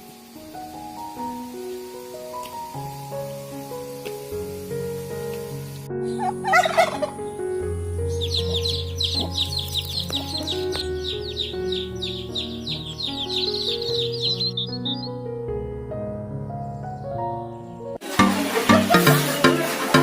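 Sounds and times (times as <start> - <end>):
gentle background music: 0.0 - 20.0
small bird chirping rapidly: 6.0 - 15.2
fowl warbling call: 6.1 - 7.2.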